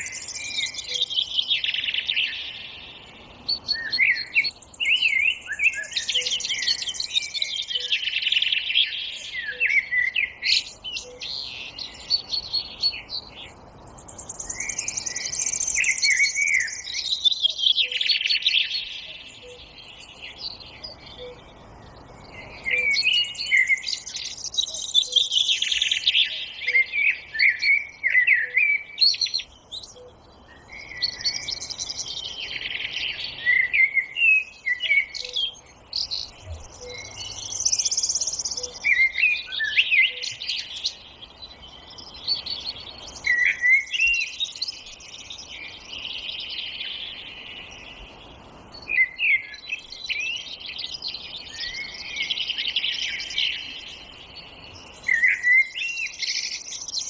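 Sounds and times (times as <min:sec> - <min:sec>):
songbirds singing: 0:00.0 - 0:57.0.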